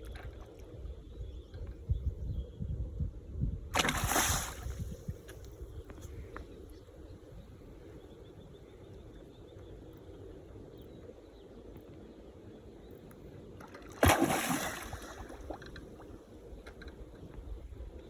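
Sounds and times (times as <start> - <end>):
loud splash on water: 3.8 - 4.8, 14.0 - 15.6
low steady background: 4.5 - 18.0.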